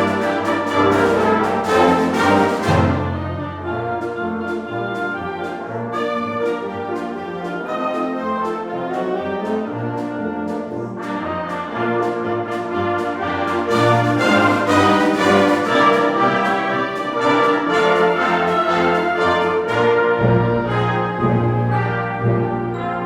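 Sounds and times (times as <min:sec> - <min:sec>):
steady beat: 0:00.0 - 0:03.2, 0:10.5 - 0:19.8
wind band playing: 0:00.0 - 0:23.0.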